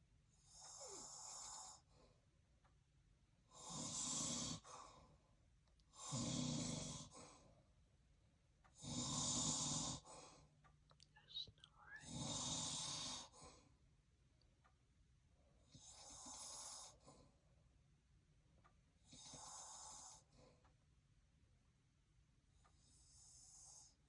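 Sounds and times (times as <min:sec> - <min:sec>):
quiet breaths: 0:00.0 - 0:24.0
man snoring: 0:03.6 - 0:04.7, 0:06.0 - 0:07.1, 0:08.8 - 0:10.1, 0:12.0 - 0:13.4, 0:19.2 - 0:20.2.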